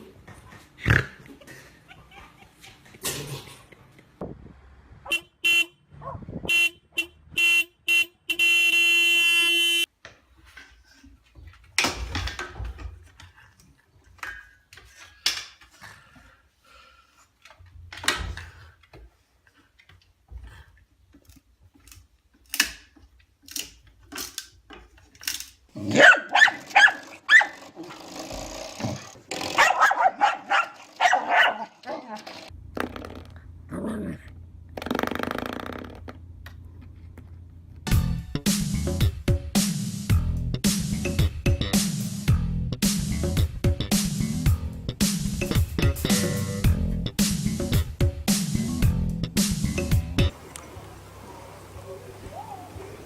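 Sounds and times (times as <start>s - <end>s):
horn honking: 5.0s - 9.9s
dog barking rapidly: 6.0s - 6.3s, 25.8s - 27.6s, 29.5s - 32.2s.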